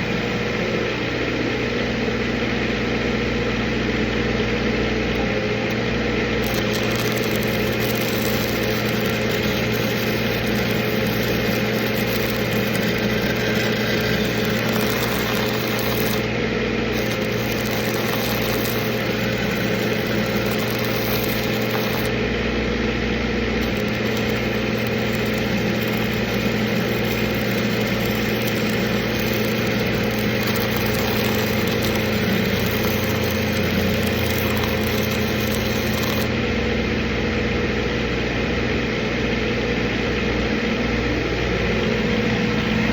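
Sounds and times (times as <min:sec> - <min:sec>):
welding machine engine hum: 0:00.0 - 0:42.9
welding hiss: 0:06.4 - 0:22.2, 0:23.6 - 0:36.4.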